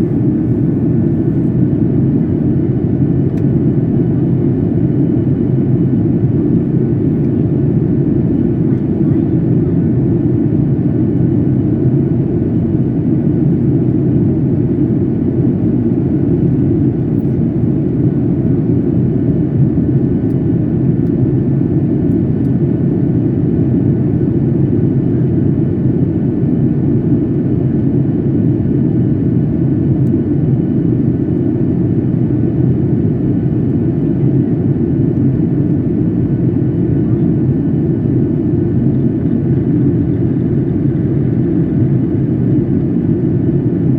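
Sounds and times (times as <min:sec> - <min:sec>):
faint steady whine: 0:00.0 - 0:02.3
jet engine rumble and airflow: 0:00.0 - 0:43.9.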